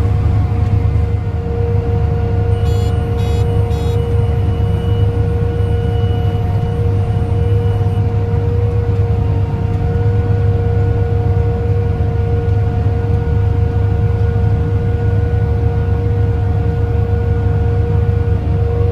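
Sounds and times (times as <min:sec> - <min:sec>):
harvester machine drone: 0:00.0 - 0:18.9
short electronic beeps: 0:02.5 - 0:08.0.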